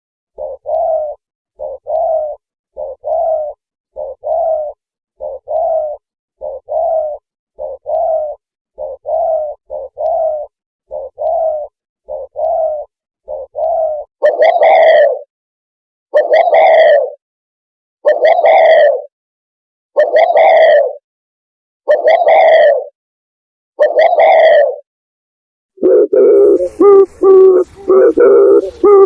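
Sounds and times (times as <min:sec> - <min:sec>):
dove cooing: 0:00.4 - 0:15.3, 0:16.2 - 0:17.2, 0:18.1 - 0:19.1, 0:20.0 - 0:21.0, 0:21.9 - 0:22.9, 0:23.8 - 0:24.8, 0:25.8 - 0:29.0.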